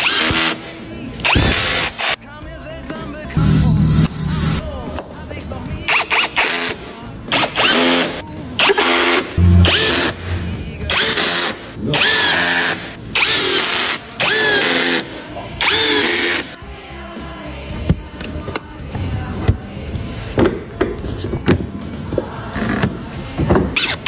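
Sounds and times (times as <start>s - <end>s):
background music: 0.1s - 24.0s
power drill whining: 5.9s - 16.5s.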